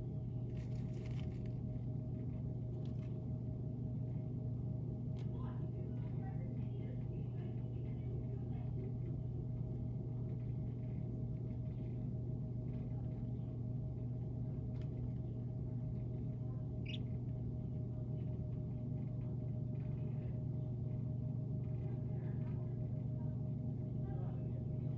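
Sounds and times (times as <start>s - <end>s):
loud steady low hum: 0.0s - 24.9s
baby chicks peeping: 16.8s - 17.1s.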